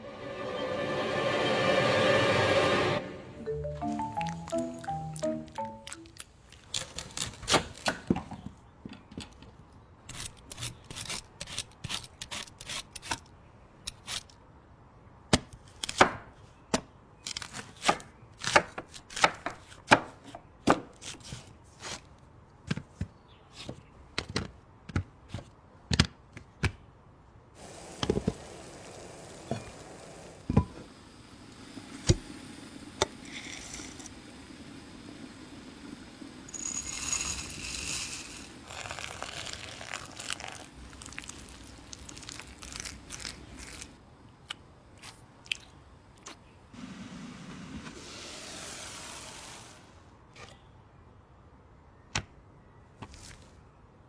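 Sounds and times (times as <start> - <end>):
faint steady hiss: 27.6 - 45.4.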